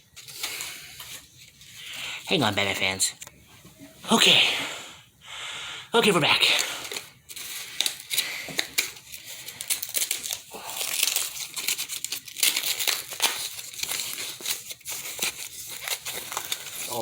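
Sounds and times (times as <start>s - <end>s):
plastic packaging crinkling: 6.0s - 17.0s
packaging tearing: 6.4s - 17.0s.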